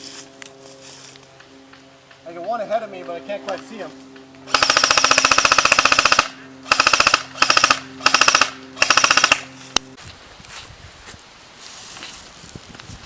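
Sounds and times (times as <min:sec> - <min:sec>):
airsoft gun firing bursts: 0:04.5 - 0:09.5.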